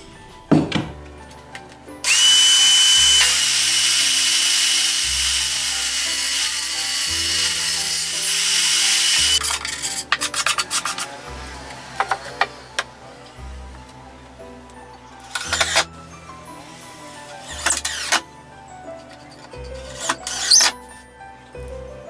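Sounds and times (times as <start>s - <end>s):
clattering knocks: 0.4s - 1.2s
electric drill boring wood: 2.0s - 9.5s, 15.2s - 18.3s, 19.7s - 20.7s.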